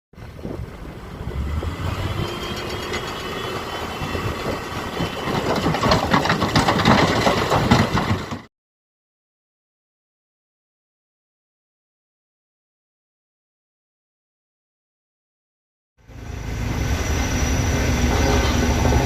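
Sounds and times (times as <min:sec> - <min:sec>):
diesel engine of heavy machinery: 0:00.2 - 0:08.5, 0:16.0 - 0:19.0.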